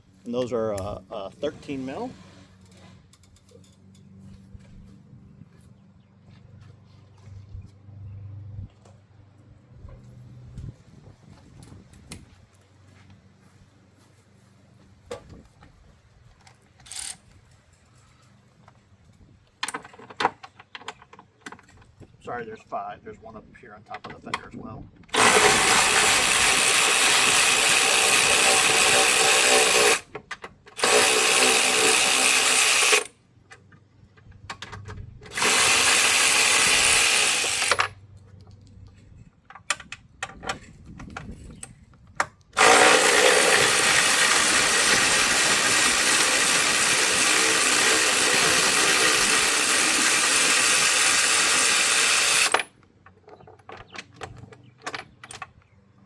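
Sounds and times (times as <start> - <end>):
cordless power tool spinning: 25.1 - 30.1, 30.8 - 33.1, 35.3 - 37.9, 42.6 - 52.7.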